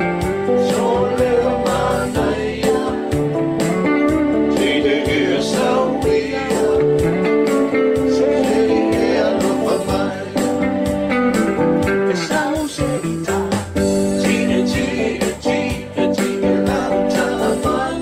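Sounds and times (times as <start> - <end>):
song with guitar: 0.0 - 18.0
strummed guitar chords: 0.0 - 18.0.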